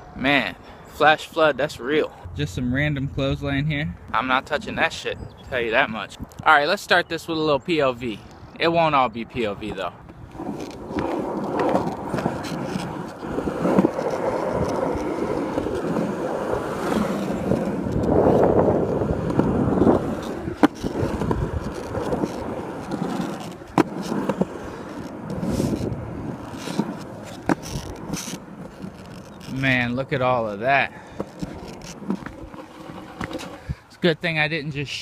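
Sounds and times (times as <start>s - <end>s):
skateboard wheels rolling: 9.2s - 33.8s.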